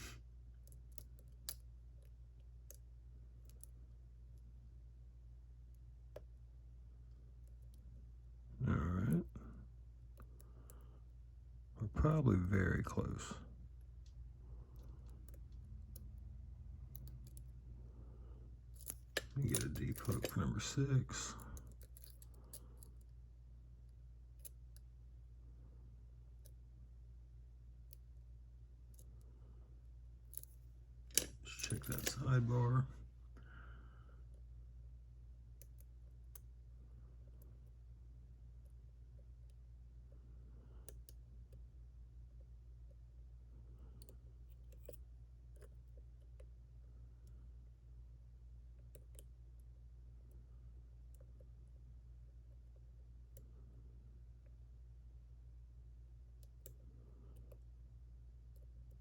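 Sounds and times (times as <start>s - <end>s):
steady low hum: 0.0s - 59.0s
faint metallic lock pick clicks: 0.6s - 2.8s, 3.4s - 3.8s, 21.5s - 23.1s.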